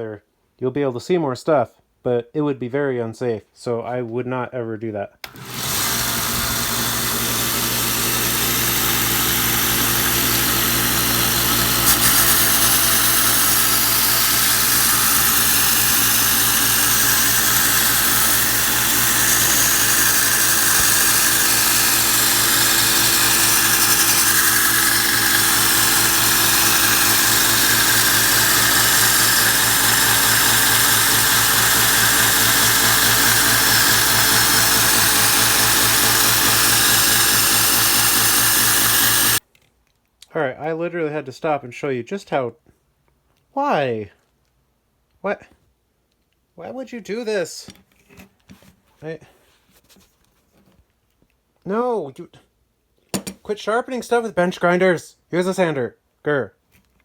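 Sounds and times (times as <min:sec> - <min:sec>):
belt sander grinding steel: 0:05.2 - 0:39.4.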